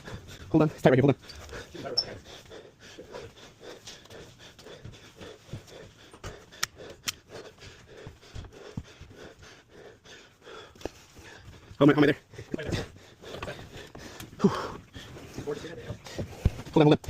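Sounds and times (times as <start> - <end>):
man panting hard: 0.0 - 17.0
sharp clicks: 6.6 - 7.2.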